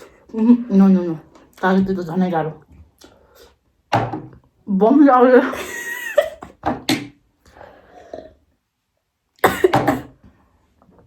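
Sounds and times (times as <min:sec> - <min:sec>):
person coughing: 0:09.4 - 0:10.2.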